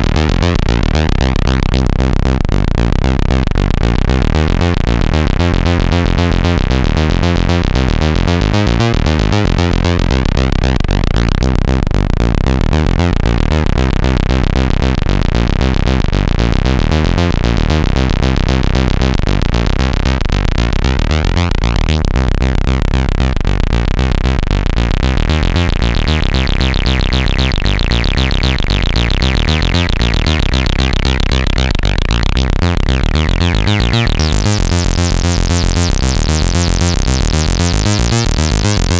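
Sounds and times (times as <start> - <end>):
synthesizer bass pattern: 0.0 - 38.9.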